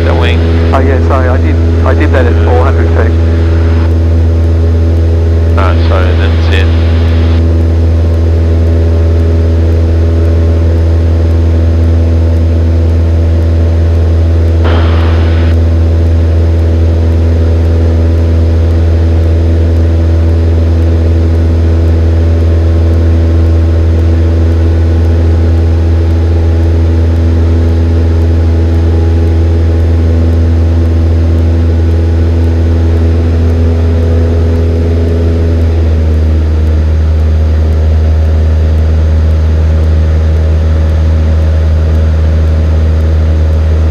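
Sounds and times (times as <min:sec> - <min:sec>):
airplane engine drone in cabin: 0:00.0 - 0:43.9.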